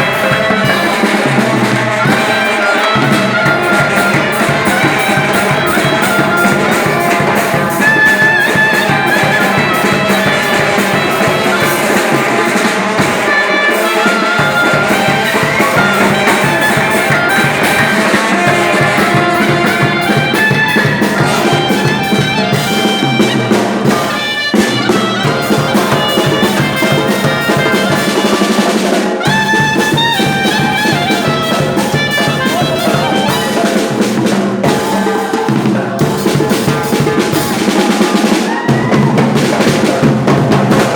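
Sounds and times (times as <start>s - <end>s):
brass melody: 0.0s - 40.9s
steady drum beat: 0.0s - 40.9s.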